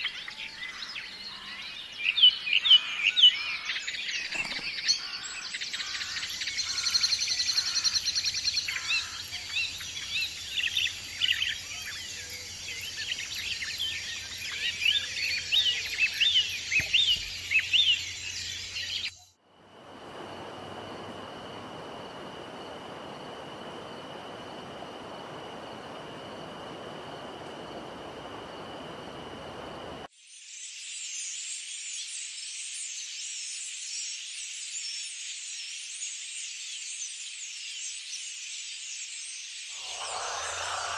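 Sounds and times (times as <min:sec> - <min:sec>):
faint high constant tone: 0:00.0 - 0:30.1, 0:39.7 - 0:40.9
birds chirping and calling: 0:00.1 - 0:19.2, 0:39.8 - 0:40.9
steady hiss: 0:05.3 - 0:30.1, 0:39.7 - 0:40.9.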